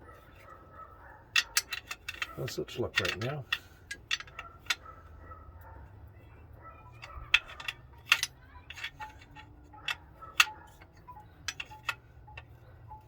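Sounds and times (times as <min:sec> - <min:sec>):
metal clanks: 0:01.3 - 0:05.1, 0:06.9 - 0:13.0
wrench clicking against bolt: 0:01.4 - 0:04.9, 0:07.0 - 0:12.6.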